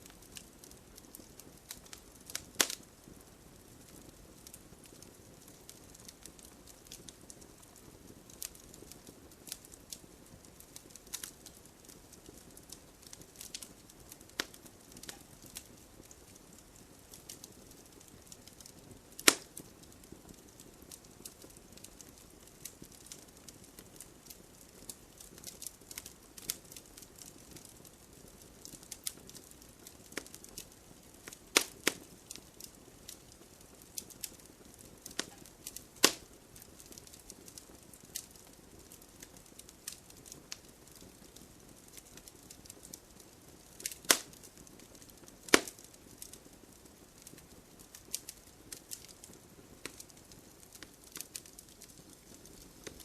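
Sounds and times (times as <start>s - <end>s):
wood fire crackling: 0.0s - 53.0s.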